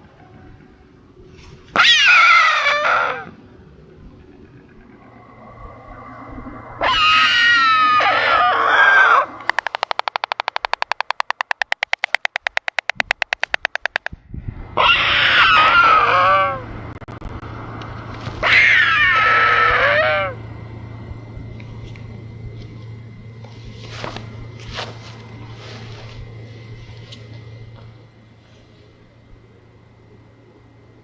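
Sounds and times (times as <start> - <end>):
drawn-out bird calls: 6.7 - 14.1
stork bill-clattering: 9.5 - 14.1.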